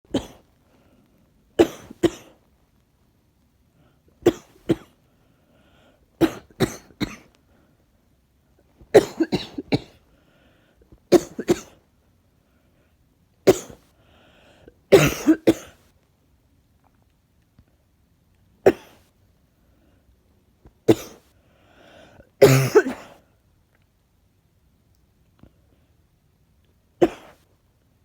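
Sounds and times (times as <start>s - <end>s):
woman coughing: 0.1s - 0.4s, 1.6s - 2.3s, 4.2s - 4.9s, 6.2s - 7.2s, 8.9s - 10.0s, 11.1s - 11.8s, 13.5s - 13.8s, 14.9s - 15.7s, 18.7s - 19.0s, 20.9s - 21.2s, 22.4s - 23.2s, 27.0s - 27.4s.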